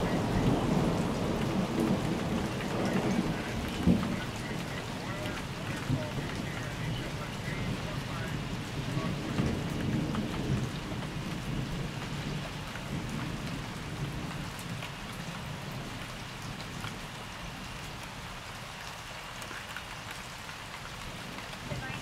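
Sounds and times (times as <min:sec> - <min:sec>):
thunder rumbling low: 0:00.0 - 0:17.0
rain pattering: 0:00.0 - 0:22.0.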